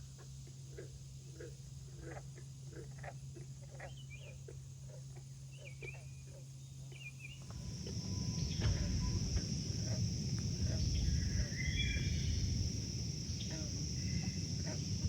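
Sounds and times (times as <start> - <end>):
frogs croaking: 0.0 - 15.0
high insect trill: 6.9 - 15.0
rumbling background noise: 7.3 - 15.0.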